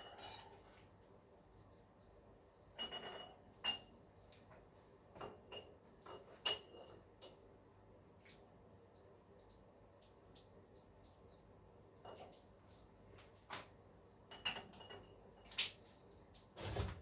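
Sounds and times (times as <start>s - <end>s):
metal clinks and knocks: 0.0s - 0.5s.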